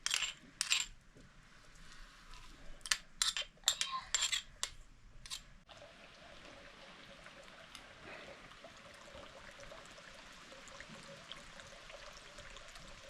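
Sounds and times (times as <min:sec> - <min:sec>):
dishes and utensils clinking: 0:00.0 - 0:01.0, 0:02.8 - 0:05.5.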